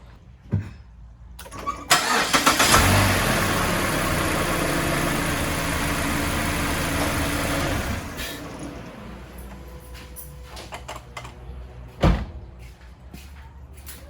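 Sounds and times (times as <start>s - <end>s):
engine starter cranking: 1.4s - 8.6s
car engine idling: 1.9s - 9.8s.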